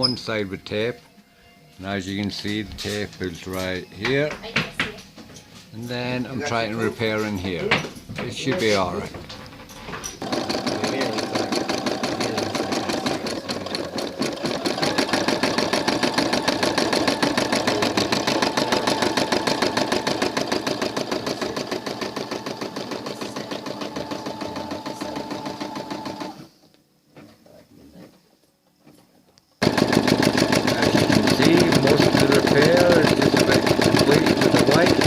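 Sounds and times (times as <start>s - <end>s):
sewing machine stitching: 10.0s - 26.5s, 29.6s - 35.0s.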